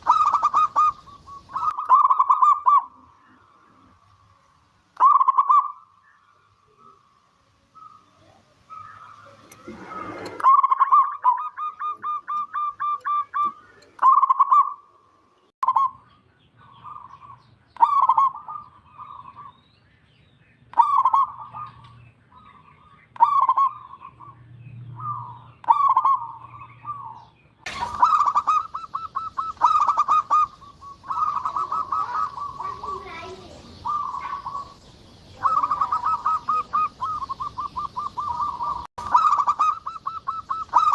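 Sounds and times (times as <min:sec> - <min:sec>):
dove cooing: 0:00.0 - 0:04.0, 0:05.0 - 0:05.8, 0:07.8 - 0:14.8, 0:20.8 - 0:22.6, 0:25.0 - 0:40.9.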